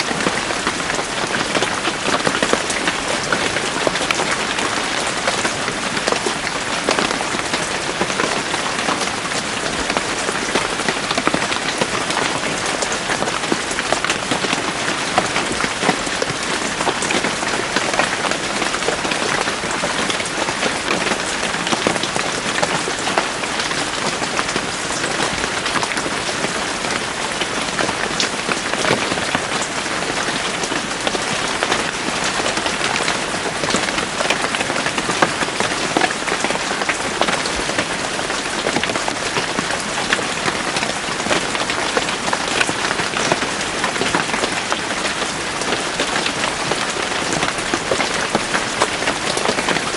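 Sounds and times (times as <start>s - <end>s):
rain pattering on leaves: 0.0s - 49.9s.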